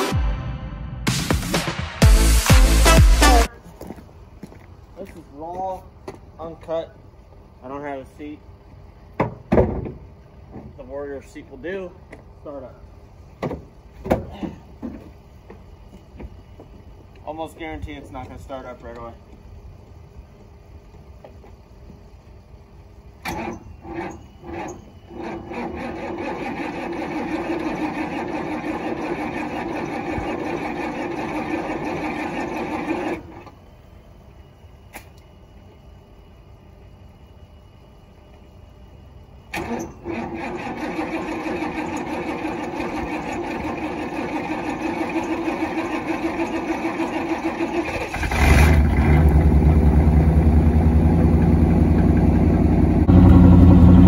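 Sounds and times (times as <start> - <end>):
car engine cranking: 23.2 - 33.5, 39.5 - 54.0
car engine running: 48.4 - 54.0.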